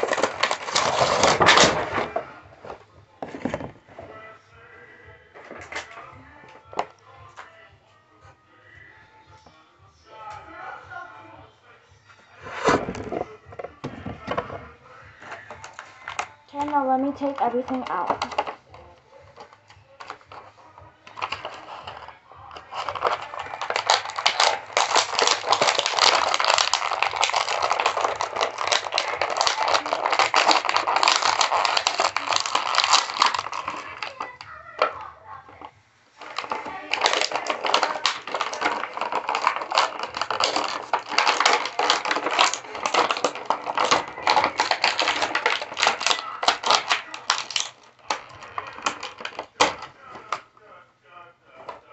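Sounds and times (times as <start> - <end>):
plastic and cardboard crinkling: 0.0 - 4.3, 12.3 - 50.5.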